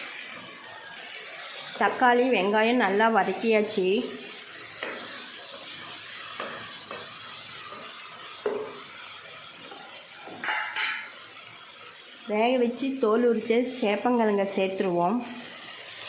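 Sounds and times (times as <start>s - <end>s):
vegetables sizzling in a pan: 0.0s - 16.0s
spoon scraping and knocking pan: 4.7s - 11.2s.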